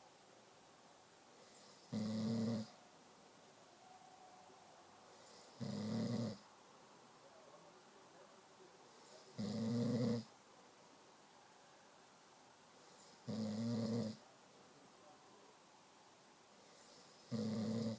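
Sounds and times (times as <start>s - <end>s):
short snores: 1.5s - 2.7s, 5.2s - 6.4s, 9.0s - 10.3s, 13.0s - 14.2s, 16.7s - 17.9s.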